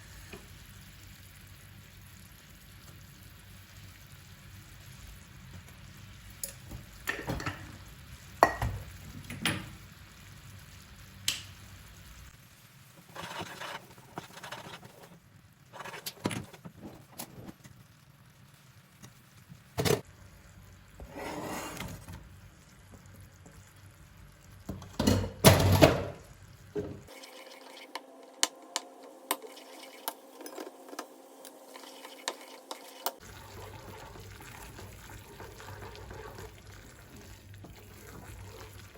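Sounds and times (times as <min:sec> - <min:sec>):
pots and utensils clinking: 0:06.4 - 0:09.8, 0:24.7 - 0:26.2, 0:26.8 - 0:38.8.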